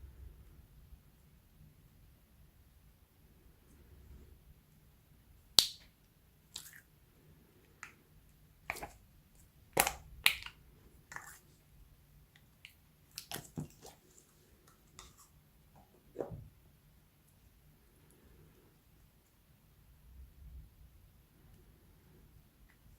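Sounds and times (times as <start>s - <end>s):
slime popping and clicking: 9.8s - 10.5s.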